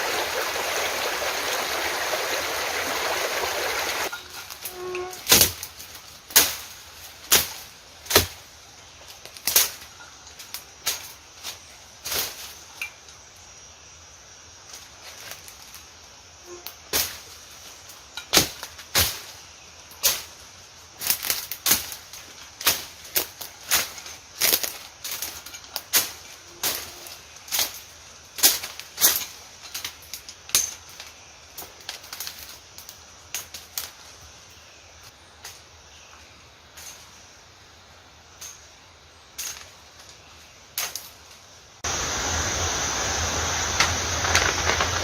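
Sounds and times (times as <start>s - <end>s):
stream water flowing: 0.0s - 4.1s, 41.8s - 45.0s
machete chopping vegetation: 5.3s - 5.7s, 6.3s - 8.5s, 18.3s - 19.3s.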